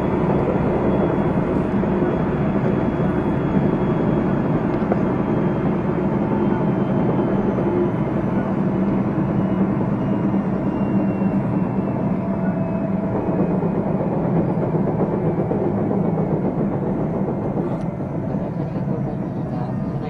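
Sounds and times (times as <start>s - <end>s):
wheels rumbling on rail: 0.0s - 20.0s.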